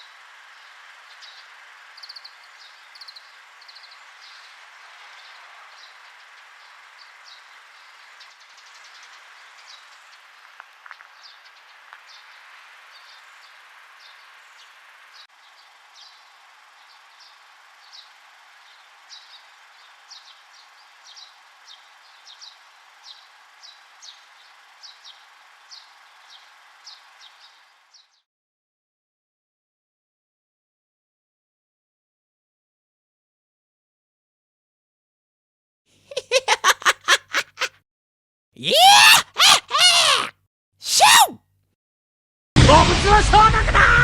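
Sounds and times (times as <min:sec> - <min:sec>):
steady outdoor hiss: 0:00.0 - 0:28.2, 0:36.0 - 0:37.7, 0:38.6 - 0:41.4
small bird calling: 0:36.1 - 0:37.7, 0:38.6 - 0:41.4.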